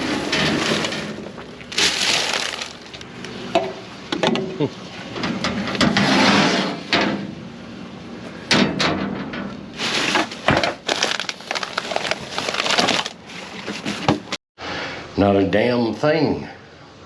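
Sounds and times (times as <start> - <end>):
junk clattering and scraping: 0.0 - 7.5, 8.3 - 14.4.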